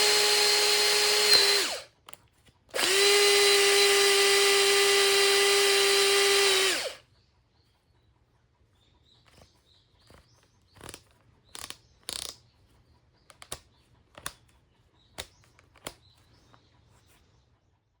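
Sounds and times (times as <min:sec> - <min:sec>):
cordless drill whining: 0:00.0 - 0:01.9, 0:02.7 - 0:07.0.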